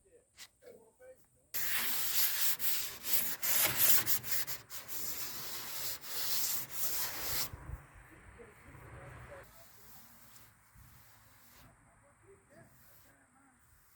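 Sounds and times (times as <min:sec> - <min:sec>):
sandpaper scratching on metal: 0:01.6 - 0:07.5, 0:09.6 - 0:11.8.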